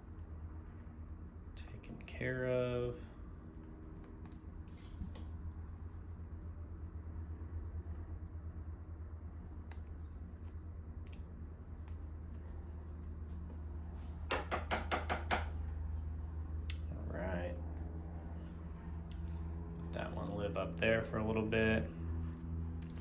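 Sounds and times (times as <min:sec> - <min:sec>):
low hum: 0:15.5 - 0:23.0.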